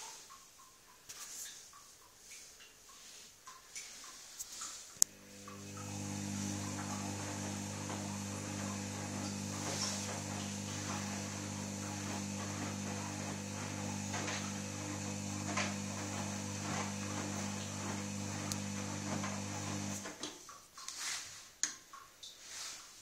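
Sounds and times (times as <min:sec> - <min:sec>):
water and laundry sloshing: 0:02.3 - 0:22.9
washing machine motor hum: 0:05.0 - 0:20.2.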